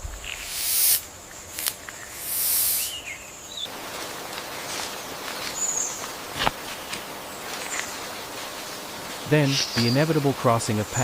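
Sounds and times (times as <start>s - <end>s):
faint high insect tone: 0.0s - 11.0s
short loud hiss: 0.2s - 3.0s
bird chirps: 0.2s - 3.7s, 9.2s - 10.2s.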